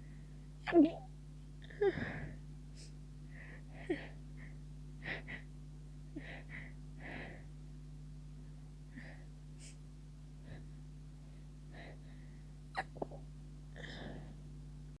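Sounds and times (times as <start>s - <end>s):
stifled sneezes: 12.8s - 13.2s.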